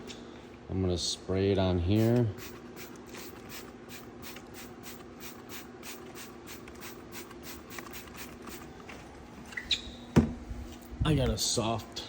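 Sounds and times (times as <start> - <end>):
faint steady hum: 0.0 - 12.0
spray bottle spritzing: 2.0 - 8.7.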